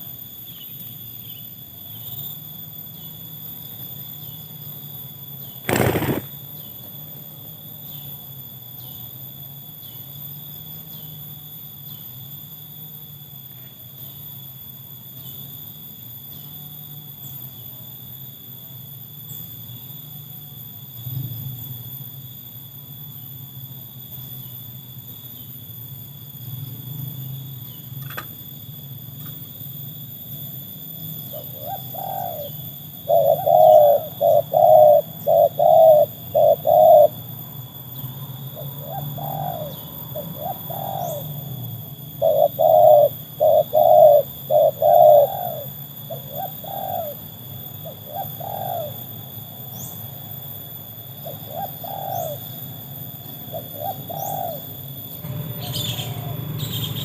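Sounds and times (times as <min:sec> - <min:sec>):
doves cooing: 0:05.6 - 0:06.5, 0:31.3 - 0:37.4, 0:38.5 - 0:49.4, 0:51.2 - 0:52.7, 0:53.5 - 0:57.0.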